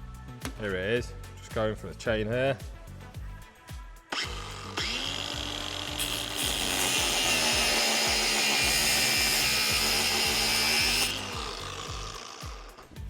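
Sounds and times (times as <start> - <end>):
angle grinder motor running: 4.1 - 13.0
metal grinding hiss: 4.1 - 13.0.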